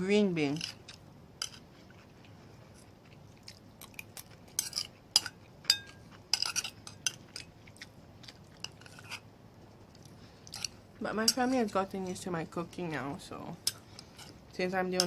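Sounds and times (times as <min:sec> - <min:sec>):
close-up chewing: 0:01.6 - 0:09.1
cutlery clinking on a plate: 0:04.5 - 0:07.5.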